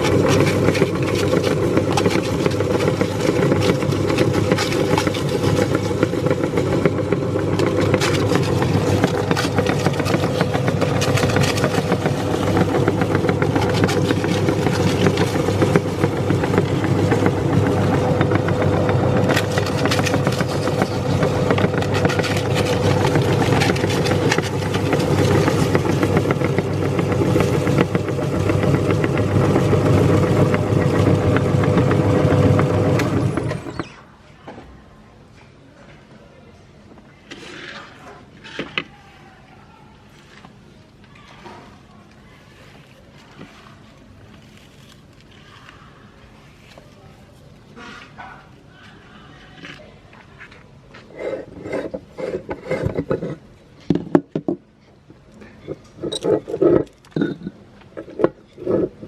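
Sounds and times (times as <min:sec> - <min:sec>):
electric grinder motor running: 0:00.0 - 0:33.9.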